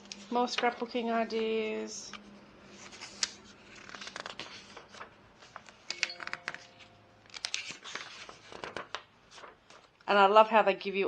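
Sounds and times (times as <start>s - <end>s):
paper rustling: 2.7s - 10.0s
magazine pages flicking: 2.8s - 10.0s.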